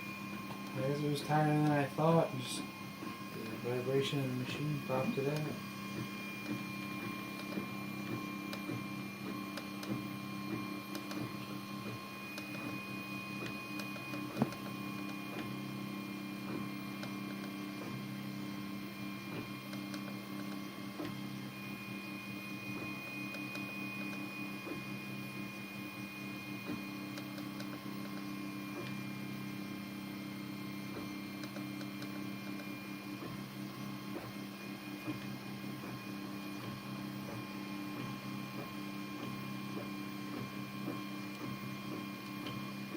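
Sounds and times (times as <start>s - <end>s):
stepper motors whining: 0.0s - 8.8s
steady hum: 0.0s - 42.9s.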